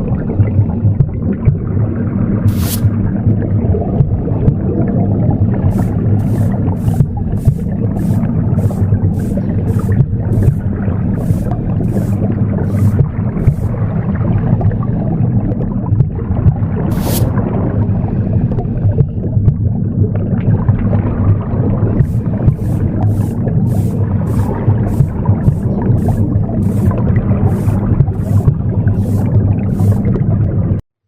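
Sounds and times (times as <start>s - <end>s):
low whooshing womb rumble: 0.0s - 30.8s
broom sweeping: 2.5s - 3.0s, 5.7s - 13.8s, 16.9s - 17.4s, 22.0s - 30.2s.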